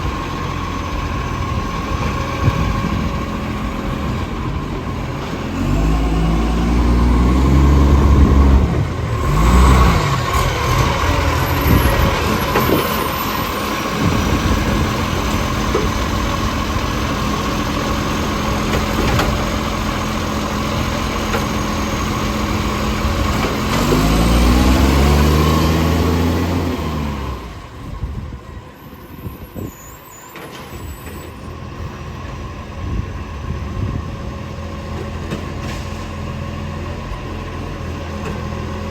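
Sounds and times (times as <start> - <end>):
garbage truck diesel engine revving: 0.0 - 28.0.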